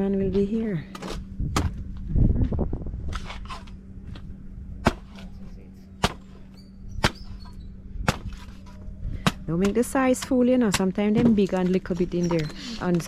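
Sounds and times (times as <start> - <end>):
machete striking coconut: 4.8 - 5.2, 6.0 - 6.4, 7.0 - 7.3, 8.0 - 8.5, 9.2 - 10.9.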